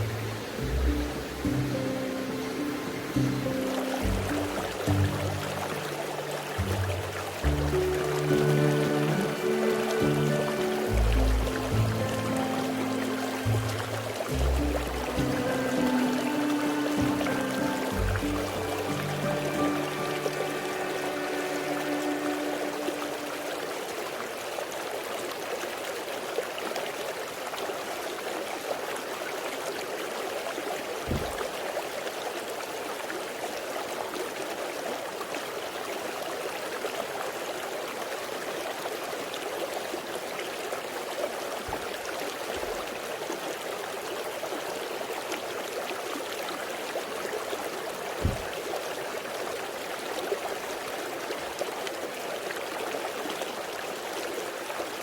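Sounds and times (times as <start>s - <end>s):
stream flowing: 0.0s - 55.0s
soft low thumps: 6.6s - 8.1s, 31.1s - 31.5s, 48.2s - 48.6s.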